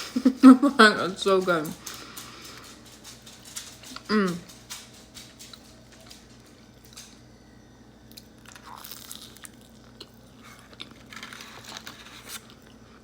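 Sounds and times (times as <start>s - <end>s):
person chewing food: 1.6s - 7.0s, 8.1s - 13.0s.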